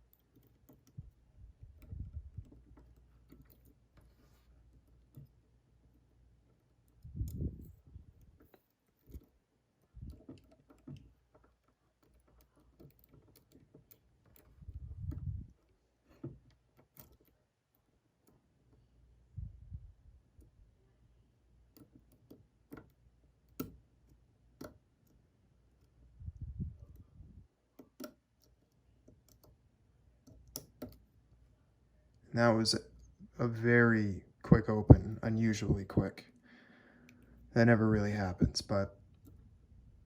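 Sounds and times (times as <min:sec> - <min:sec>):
lock picking clicks and ticks: 0:00.0 - 0:04.0, 0:06.4 - 0:15.8, 0:16.4 - 0:18.4, 0:21.6 - 0:26.0, 0:27.7 - 0:31.1
low thumps of lock handling: 0:00.0 - 0:17.4.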